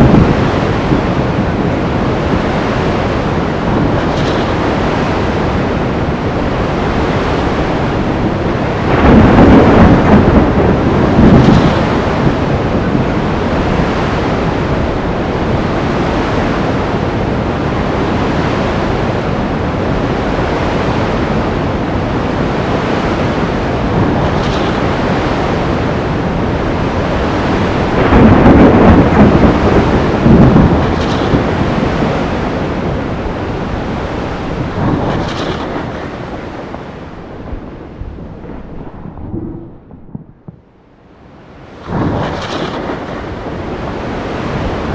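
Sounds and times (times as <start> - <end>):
surf: 0.0 - 39.9, 41.2 - 44.9
rain: 0.0 - 44.9
thunder crack and roll: 0.0 - 44.9
wind: 0.0 - 44.9.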